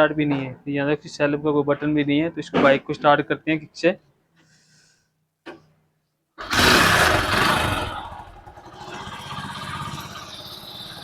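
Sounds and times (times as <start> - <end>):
motorbike engine kick-started and idling: 6.4 - 11.0.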